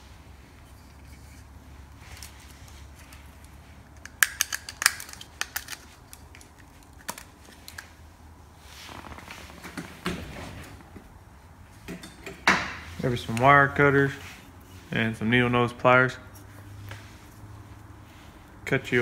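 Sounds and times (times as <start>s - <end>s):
low steady hum: 0.0s - 19.0s
clicks and snaps of wire and tools: 2.1s - 7.9s.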